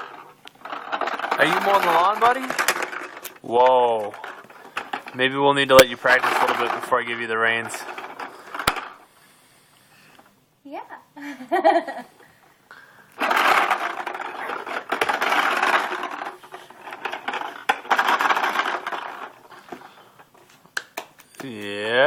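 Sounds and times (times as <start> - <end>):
toy lawn mower clicking clatter: 0.0 - 3.4, 4.0 - 8.8, 13.2 - 19.9.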